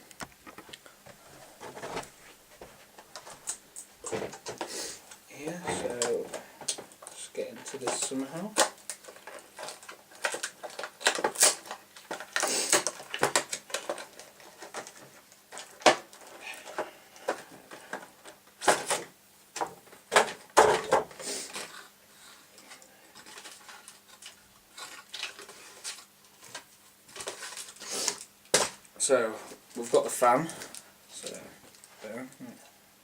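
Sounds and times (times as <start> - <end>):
faint steady hum: 0.0 - 33.0
packaging being opened: 5.8 - 19.1, 23.2 - 28.8.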